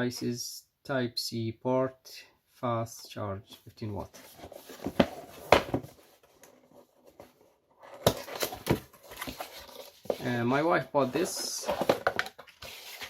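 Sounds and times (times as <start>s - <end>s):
packaging handling knocks and clicks: 11.7s - 12.6s.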